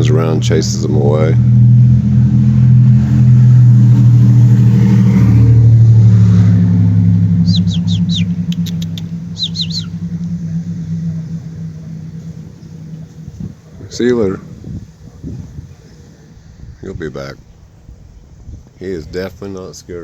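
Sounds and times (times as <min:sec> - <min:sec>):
motor engine running low: 0:00.0 - 0:16.9
sharp ticks: 0:07.3 - 0:14.3
short falling bird chirps: 0:07.4 - 0:13.7.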